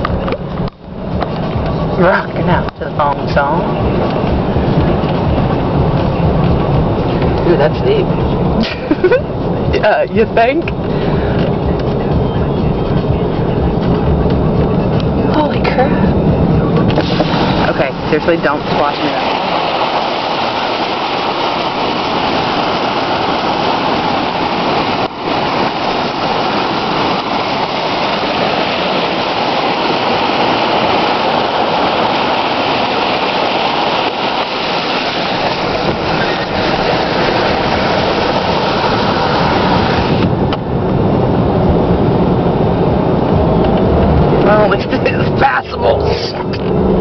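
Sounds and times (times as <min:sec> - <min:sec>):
low engine rumble: 0:00.0 - 0:47.0
water spraying around truck tyres: 0:00.0 - 0:47.0.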